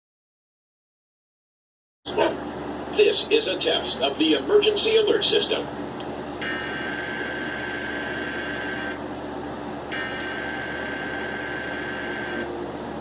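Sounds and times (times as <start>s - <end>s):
steady hiss and hum: 2.1s - 13.0s
buzzing screechy data tones: 6.4s - 9.0s, 9.9s - 12.5s.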